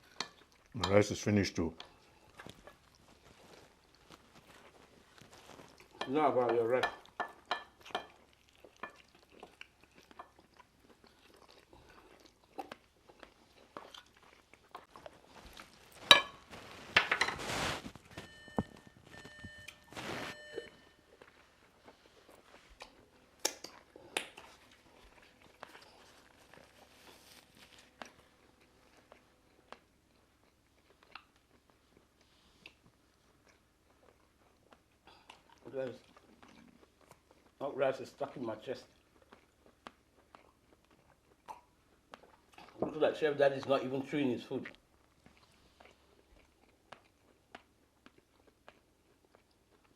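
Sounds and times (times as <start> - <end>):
quiet chewing: 0.0 - 49.9
cutlery clinking on plates: 6.0 - 8.2, 16.0 - 16.4
scraping and rustling: 15.0 - 20.6.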